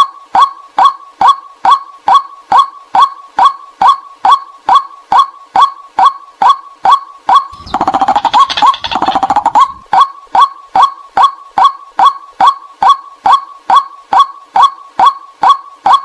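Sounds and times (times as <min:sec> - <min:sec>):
waterhen calling: 0:07.5 - 0:09.9
bird chattering run: 0:07.5 - 0:10.1.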